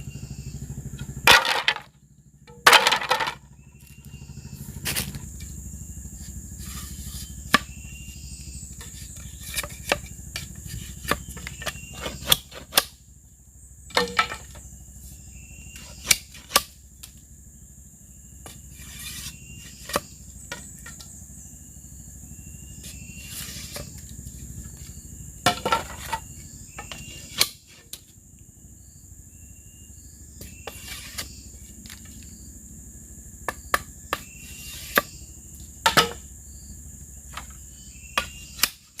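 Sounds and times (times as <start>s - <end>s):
insects droning: 0.0s - 39.0s
tools knocking on bamboo: 2.5s - 3.4s, 13.9s - 14.6s, 25.4s - 26.2s, 35.8s - 36.2s.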